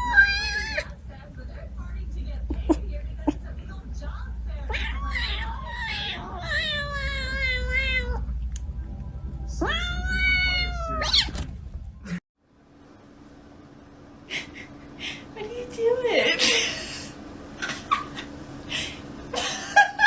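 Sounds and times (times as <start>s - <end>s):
cat meowing: 0.0s - 0.9s, 4.7s - 8.2s, 9.6s - 11.3s.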